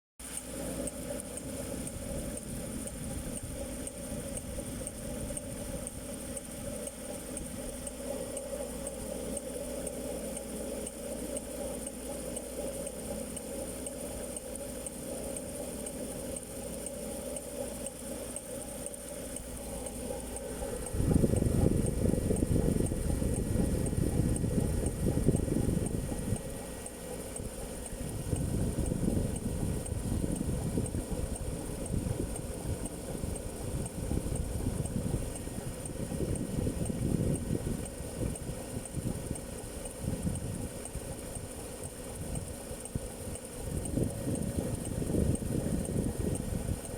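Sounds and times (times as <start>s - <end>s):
engine running: 0.2s - 46.9s
clattering engine knock: 19.4s - 46.9s.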